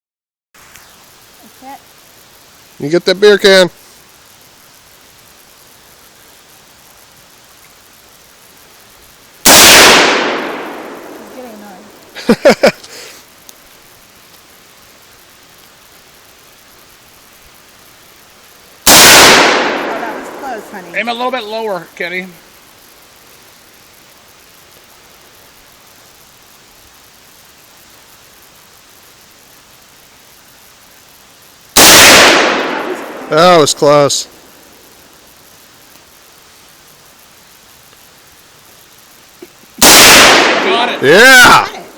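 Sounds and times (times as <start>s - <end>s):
faint steady hiss: 0.6s - 41.9s
rifle shot with echo: 9.4s - 11.2s, 18.8s - 20.5s, 31.8s - 33.7s, 39.8s - 41.7s.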